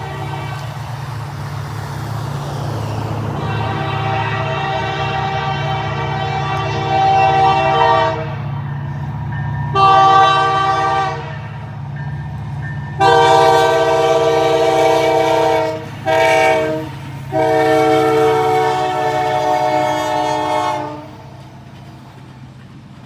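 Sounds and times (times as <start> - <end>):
locomotive air horn blasts: 0.0 - 1.3, 3.2 - 8.7, 9.6 - 11.7, 12.9 - 21.4
diesel engine rumble: 0.0 - 23.0.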